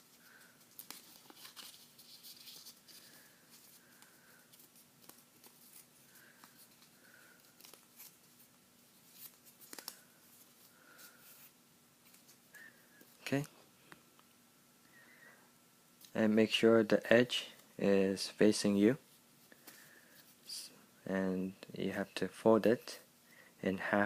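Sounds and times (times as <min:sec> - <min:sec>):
paper crinkling being folded: 0:00.0 - 0:12.4.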